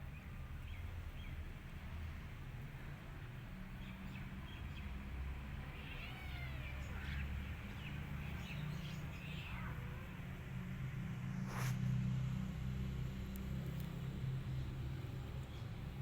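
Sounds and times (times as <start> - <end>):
cats meowing: 5.6 - 10.3.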